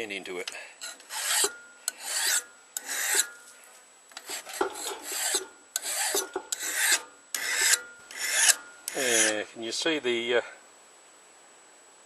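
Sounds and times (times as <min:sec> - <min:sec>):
hand file rasping on steel: 0:00.8 - 0:03.4, 0:04.2 - 0:09.4.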